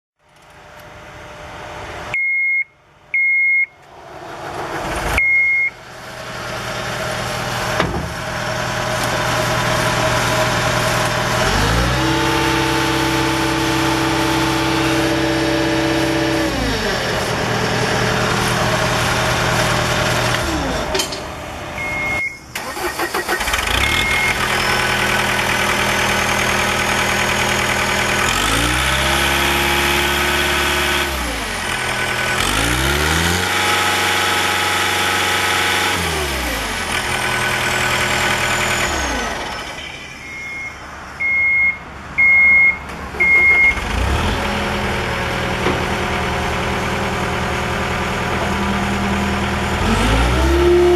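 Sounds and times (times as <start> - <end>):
electronic warning beeps: 2.2 - 3.8, 5.2 - 5.8, 21.8 - 22.5, 40.2 - 43.8
diesel engine revving: 3.1 - 39.9, 40.9 - 50.9.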